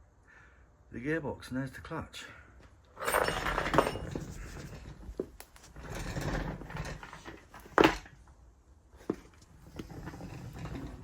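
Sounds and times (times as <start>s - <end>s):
engine parts scraping and rustling: 3.0s - 7.8s, 9.0s - 11.0s.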